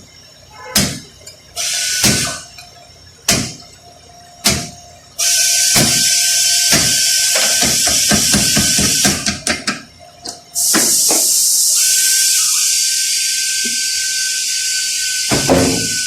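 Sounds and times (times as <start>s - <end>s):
loud steady hiss: 10.5s - 16.0s.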